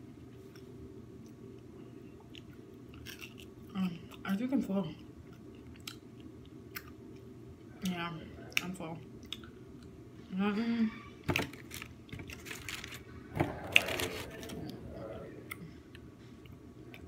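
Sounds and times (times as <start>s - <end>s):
packaging clicks and rustling: 11.4s - 13.0s
person humming: 13.4s - 15.8s.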